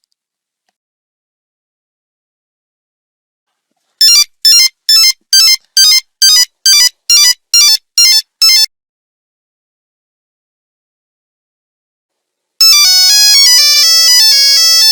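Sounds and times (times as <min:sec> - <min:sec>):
electronic beeping ringtone: 0:04.0 - 0:08.7, 0:12.6 - 0:14.9.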